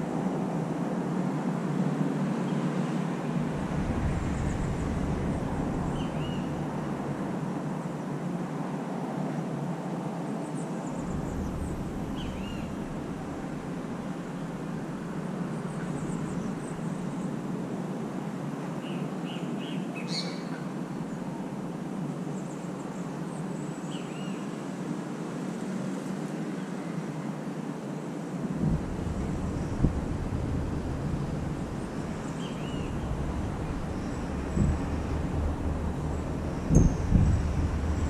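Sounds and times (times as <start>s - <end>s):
low background noise: 0.0s - 38.0s
faint bird chirps: 11.0s - 14.9s.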